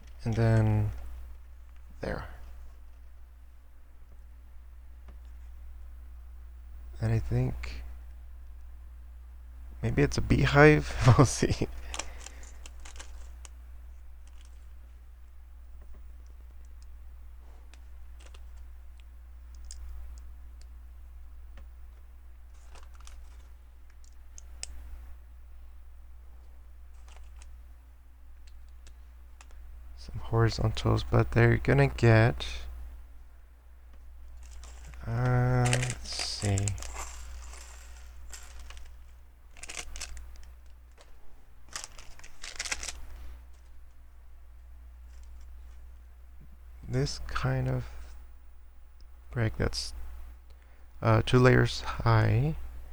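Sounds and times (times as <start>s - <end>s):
steady low hum: 0.0s - 52.9s
plastic pieces clicking and rattling: 11.1s - 13.4s, 22.5s - 24.8s, 26.9s - 27.5s, 34.4s - 43.0s
faint rustle: 34.0s - 44.0s.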